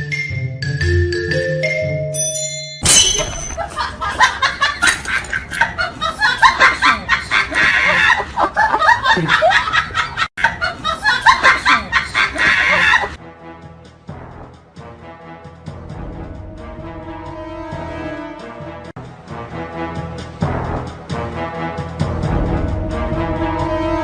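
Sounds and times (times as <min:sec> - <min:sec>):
bursts of laughter: 0:03.6 - 0:13.2.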